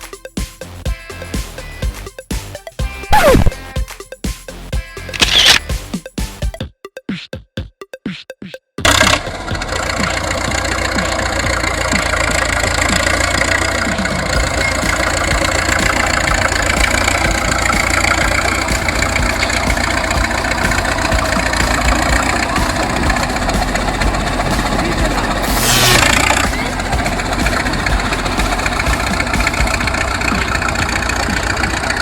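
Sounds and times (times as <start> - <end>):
large machine engine rumbling: 8.8 - 32.0.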